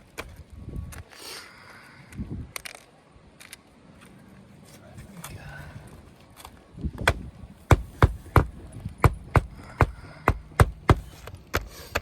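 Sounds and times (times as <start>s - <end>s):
hammer nailing shingle: 7.0s - 12.0s.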